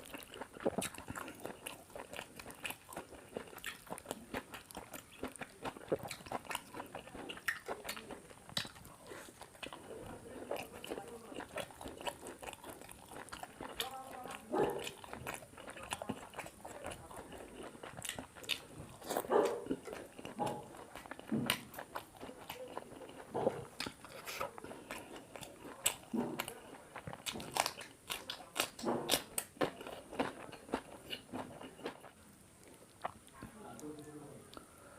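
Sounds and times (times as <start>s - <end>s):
close chewing and mouth sounds: 0.0s - 34.9s.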